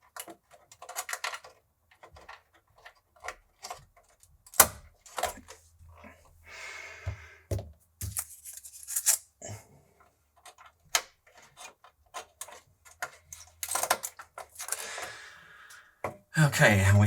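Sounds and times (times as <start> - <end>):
small parts clicking and tapping: 0.0 - 5.6, 10.0 - 15.1.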